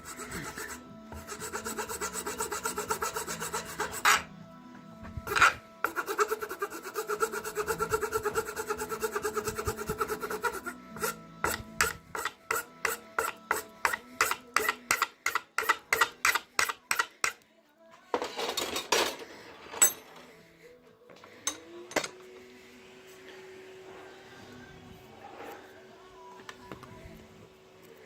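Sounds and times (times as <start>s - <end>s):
hand file rasping on wood: 0.0s - 4.3s, 5.3s - 17.4s.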